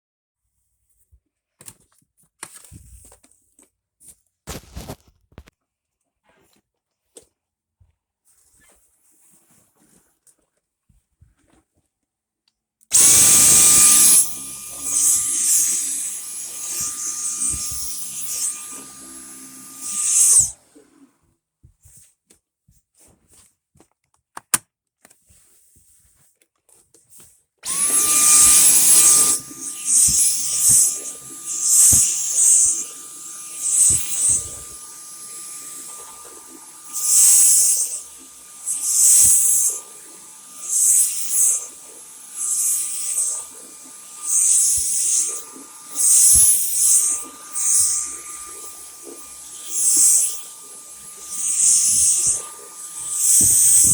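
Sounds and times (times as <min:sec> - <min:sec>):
vacuum airflow noise: 0:12.9 - 0:20.6, 0:27.6 - 0:53.9
vacuum motor whining: 0:12.9 - 0:21.1, 0:27.6 - 0:53.9.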